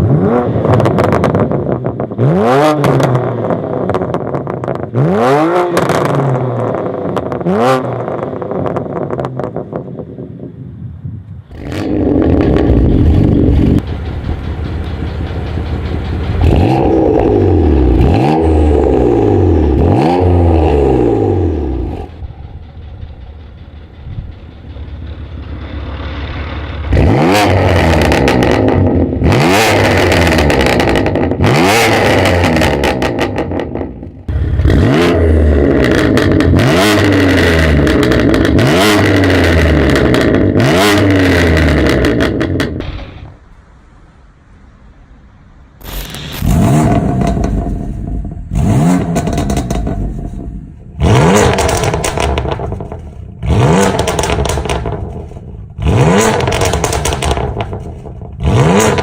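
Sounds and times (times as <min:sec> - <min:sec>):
car engine revving: 0:00.0 - 0:09.9, 0:11.5 - 0:59.0
exhaust crackling: 0:11.3 - 0:59.0
low engine idle rumble: 0:12.5 - 0:18.0, 0:21.7 - 0:27.0, 0:34.1 - 0:34.7.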